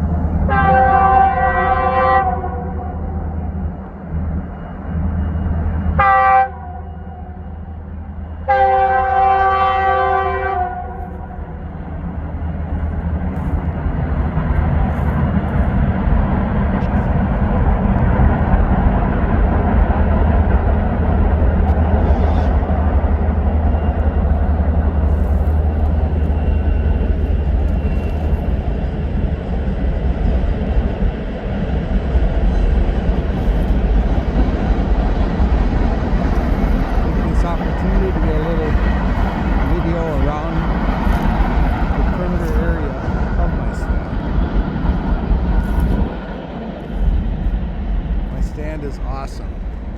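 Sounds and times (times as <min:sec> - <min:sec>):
rumble of passing train: 0:00.0 - 0:49.9
train horn blasts: 0:00.5 - 0:03.2, 0:05.9 - 0:07.5, 0:08.4 - 0:11.4.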